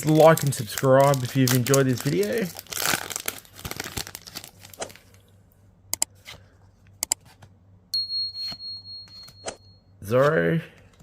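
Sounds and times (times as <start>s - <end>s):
steady high-pitched tone: 8.0s - 9.8s.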